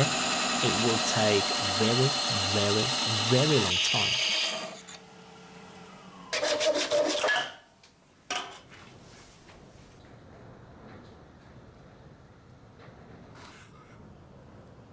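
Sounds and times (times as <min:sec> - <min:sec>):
sandpaper rubbing on spinning wood: 0:00.0 - 0:04.6.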